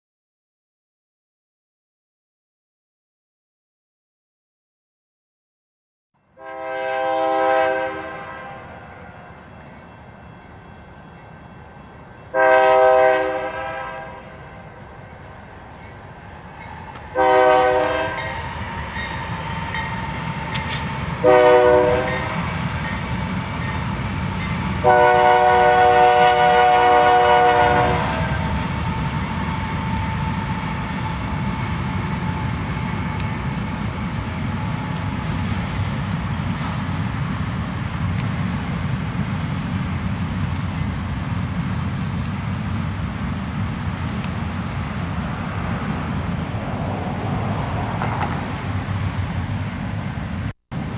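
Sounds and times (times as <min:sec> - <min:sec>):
locomotive chime horn blasts: 0:06.3 - 0:14.7, 0:17.1 - 0:20.1, 0:21.2 - 0:22.5, 0:24.8 - 0:28.6
freight train rumbling: 0:06.3 - 0:50.9.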